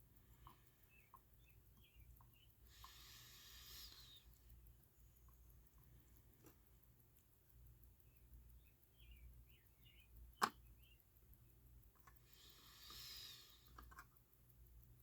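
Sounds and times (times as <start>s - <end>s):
soft hiss: 0.0s - 15.0s
sharp small click: 10.4s - 10.6s.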